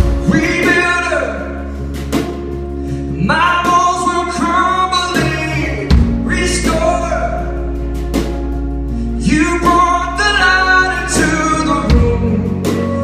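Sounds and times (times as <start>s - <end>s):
bass line: 0.0s - 13.0s
guitar: 0.0s - 13.0s
man singing: 0.2s - 1.7s, 3.1s - 7.8s, 9.2s - 13.0s.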